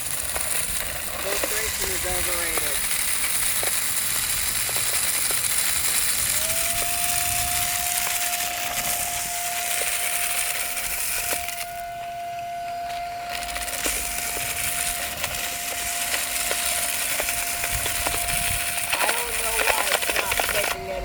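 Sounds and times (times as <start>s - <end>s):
rushing air: 0.0s - 12.6s
sand grains ticking: 0.0s - 21.0s
vacuum motor whining: 0.0s - 21.0s.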